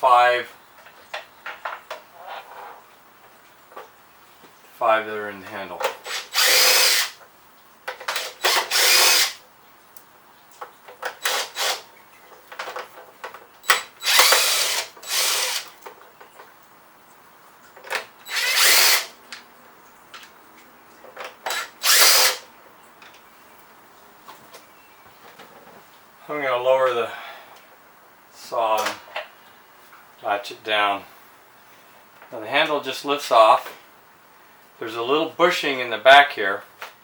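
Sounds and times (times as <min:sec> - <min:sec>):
impact driver bursts: 0:05.9 - 0:07.2, 0:08.1 - 0:09.4, 0:11.2 - 0:11.9, 0:13.7 - 0:15.7, 0:18.2 - 0:19.2, 0:21.5 - 0:22.5.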